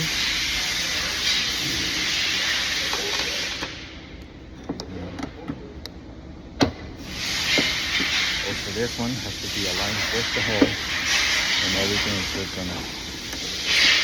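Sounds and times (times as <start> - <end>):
steady hiss: 0.0 - 4.0, 7.0 - 14.0.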